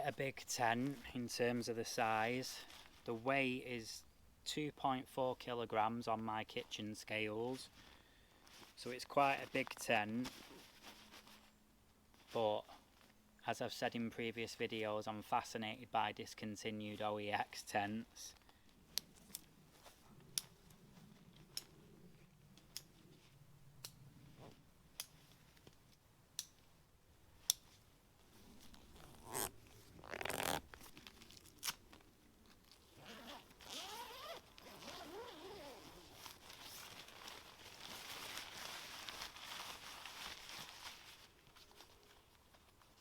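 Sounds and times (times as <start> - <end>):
nylon fabric rustling: 7.7 - 13.1, 27.7 - 43.0
zip being pulled: 29.0 - 30.6, 33.0 - 36.1.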